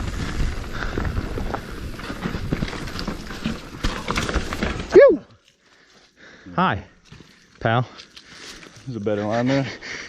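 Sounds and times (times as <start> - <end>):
bike knocks and rattles: 0.0 - 5.0
bike tyres rumbling on dirt: 0.0 - 5.2.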